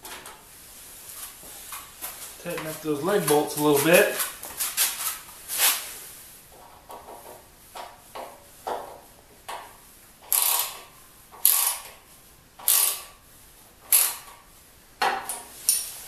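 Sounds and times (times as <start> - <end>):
ratchet tightening bolts: 10.2 - 12.0, 12.6 - 13.2, 13.9 - 14.4.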